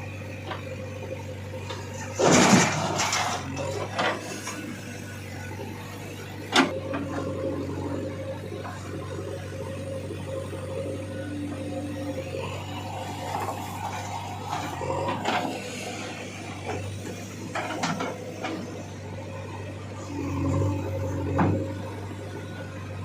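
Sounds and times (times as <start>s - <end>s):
backhoe engine hum: 0.0s - 23.0s.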